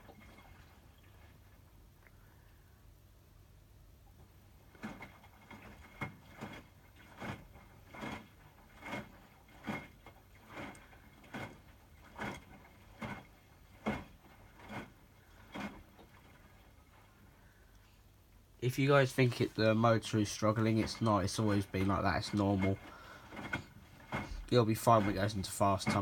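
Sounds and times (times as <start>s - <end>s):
washing machine motor surging: 0.0s - 3.0s, 3.8s - 26.0s.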